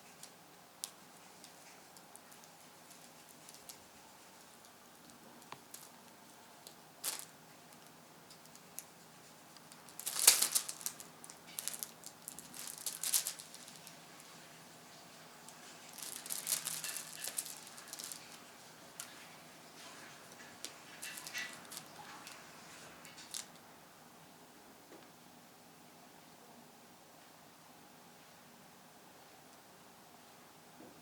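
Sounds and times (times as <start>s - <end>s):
foil crinkling and rattling: 0.0s - 6.2s, 7.0s - 14.5s, 15.3s - 23.6s.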